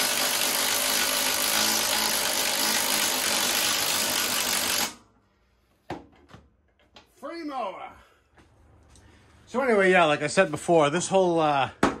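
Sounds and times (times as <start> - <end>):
power tool running: 0.0 - 5.0.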